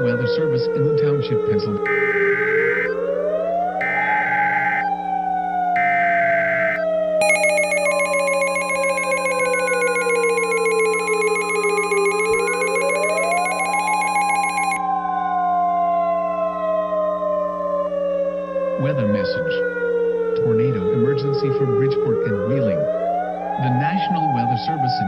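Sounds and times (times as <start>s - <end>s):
digital data burst: 1.9s - 2.9s, 3.8s - 4.8s, 5.8s - 14.8s
harsh buzzing alert tone: 1.9s - 3.0s, 3.8s - 4.9s, 5.8s - 14.8s
slow siren wail: 1.9s - 5.0s, 5.8s - 14.8s
steady warning alarm tone: 1.9s - 5.0s, 5.8s - 14.8s.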